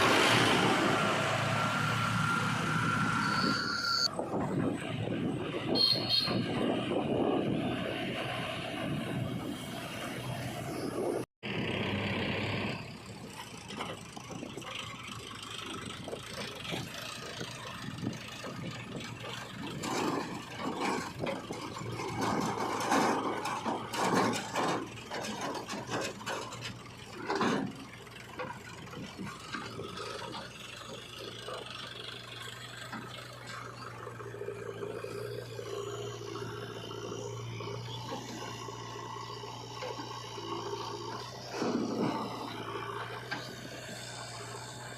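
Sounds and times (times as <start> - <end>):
backhoe diesel engine running: 0.0 - 44.9
clatter and knocks: 13.3 - 34.1.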